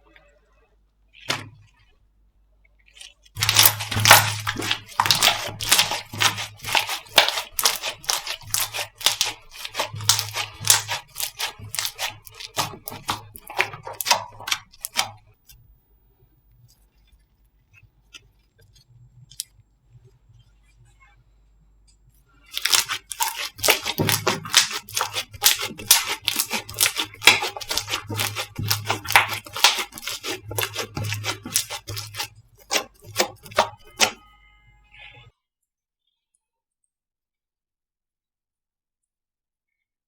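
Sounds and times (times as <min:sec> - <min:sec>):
slime crackling and popping: 0:02.9 - 0:15.3, 0:22.5 - 0:34.2.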